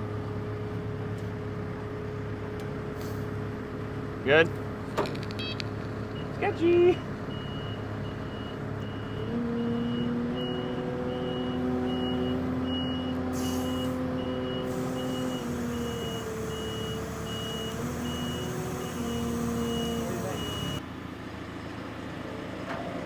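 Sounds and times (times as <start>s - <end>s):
backup alarm beeping: 5.4s - 5.6s, 6.2s - 20.8s
forklift engine revving: 7.0s - 20.8s.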